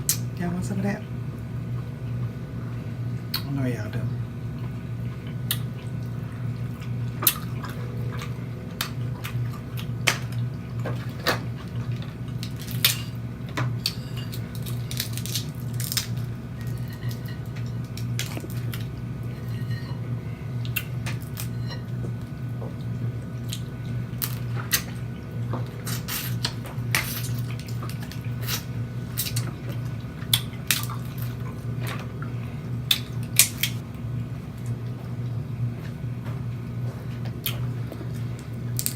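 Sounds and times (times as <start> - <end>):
steady low hum: 0.0 - 38.9.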